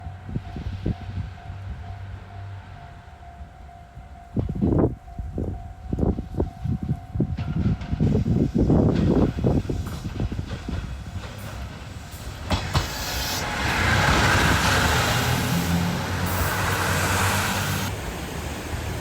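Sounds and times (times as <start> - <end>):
train rushing rolling noise: 4.3 - 19.0
train wheels clicking over rail joints: 6.8 - 19.0.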